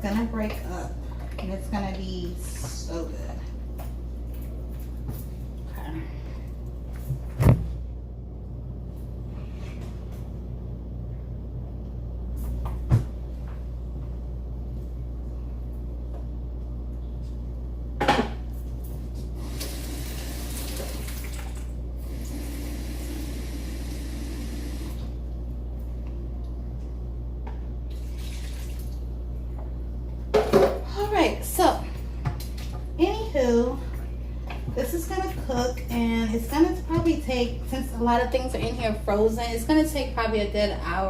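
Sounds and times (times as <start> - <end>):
steady low hum: 0.0 - 41.0
water running from tap: 19.4 - 25.0, 27.9 - 29.0.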